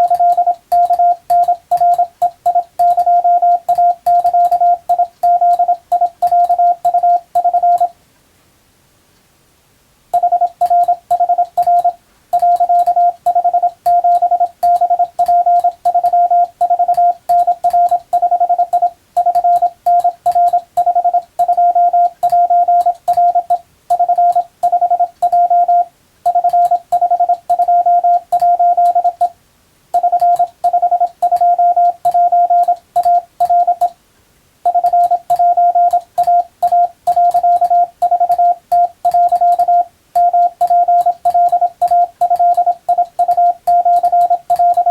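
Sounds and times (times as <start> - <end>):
faint keying clicks: 0.0 - 7.9, 34.7 - 44.9
morse code beeps: 0.0 - 7.9, 10.2 - 29.4, 30.0 - 34.0, 34.7 - 44.9.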